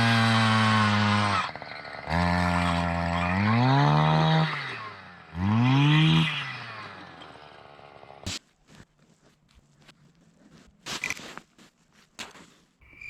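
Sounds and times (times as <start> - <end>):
ice auger engine revving: 0.0 - 8.2.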